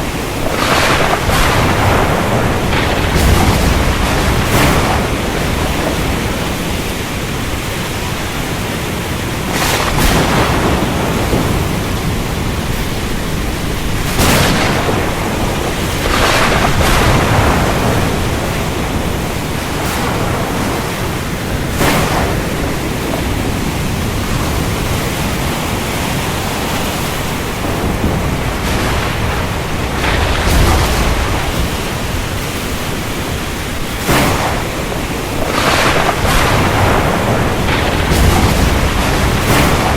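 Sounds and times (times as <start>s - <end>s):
sharp thunder cracks: 0.0s - 8.5s, 9.4s - 39.9s
heavy rain: 0.0s - 39.9s
low rolling thunder rumble: 0.0s - 39.9s.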